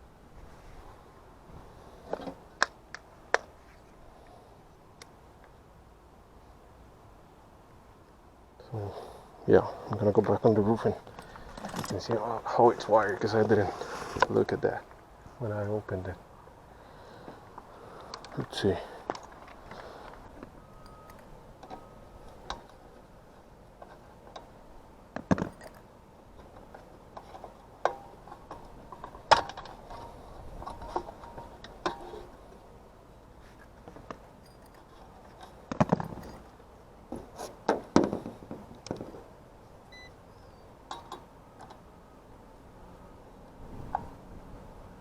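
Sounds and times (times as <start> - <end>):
low steady background noise: 0.0 - 45.0
hardware clicks and rattles: 11.0 - 12.1.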